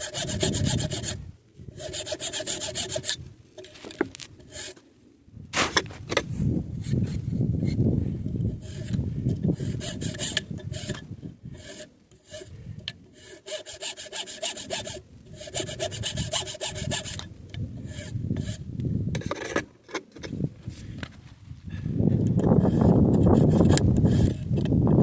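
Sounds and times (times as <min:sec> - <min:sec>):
hand file rasping: 0:00.0 - 0:04.8, 0:08.5 - 0:18.6, 0:22.4 - 0:24.7.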